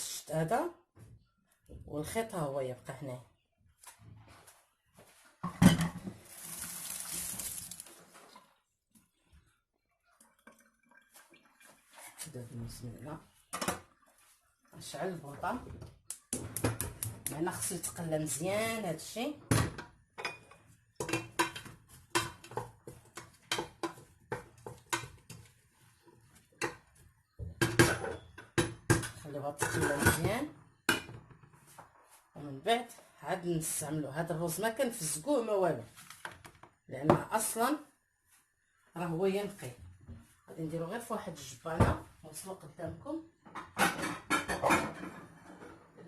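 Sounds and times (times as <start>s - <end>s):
water running: 6.2s - 8.6s, 9.7s - 13.2s.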